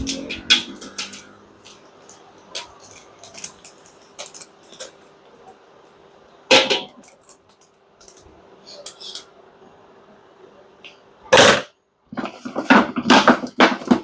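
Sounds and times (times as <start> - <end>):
utensils and dishes clinking: 0.0 - 5.1.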